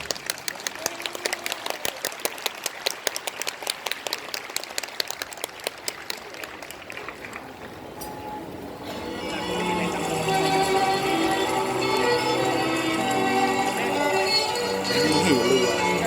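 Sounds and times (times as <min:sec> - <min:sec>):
audience clapping: 0:00.0 - 0:07.9.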